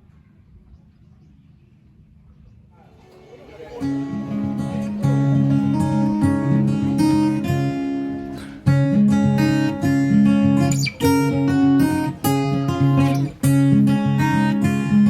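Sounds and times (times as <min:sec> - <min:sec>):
strummed acoustic guitar chords: 0:03.0 - 0:15.0.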